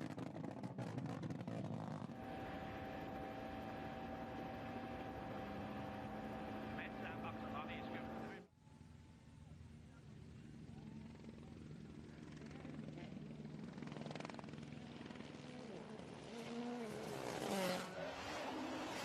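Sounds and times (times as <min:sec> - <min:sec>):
rally car engine passing: 0:02.1 - 0:08.4, 0:15.1 - 0:19.0.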